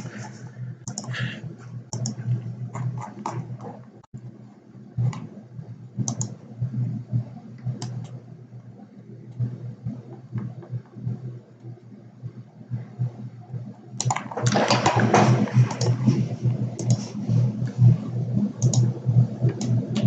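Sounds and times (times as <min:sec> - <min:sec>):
steady low hum: 0:00.0 - 0:20.0
mouse and keyboard clicks: 0:00.9 - 0:01.2, 0:06.0 - 0:06.4, 0:18.6 - 0:18.9.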